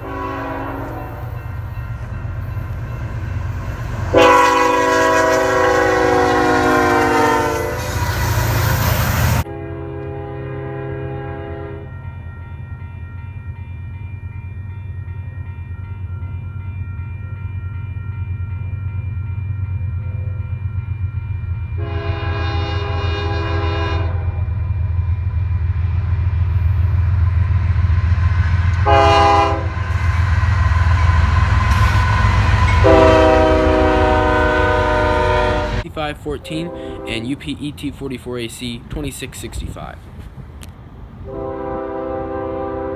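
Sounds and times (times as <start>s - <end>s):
locomotive air horn: 0.0s - 1.4s, 4.1s - 8.3s, 9.4s - 11.9s, 21.8s - 24.5s, 28.8s - 30.0s, 31.6s - 35.9s, 36.6s - 37.2s, 41.2s - 42.9s
diesel locomotive rumble: 0.0s - 11.9s, 18.8s - 42.9s.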